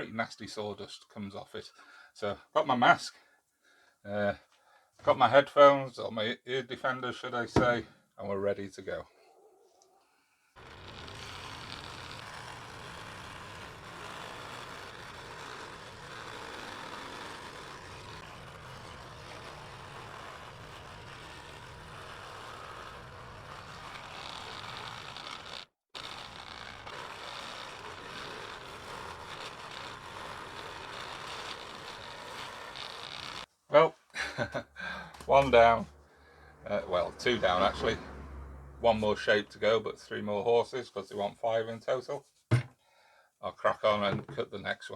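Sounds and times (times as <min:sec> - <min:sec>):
scroll saw cutting wood: 0:07.4 - 0:07.8, 0:10.6 - 0:33.5, 0:35.1 - 0:39.9.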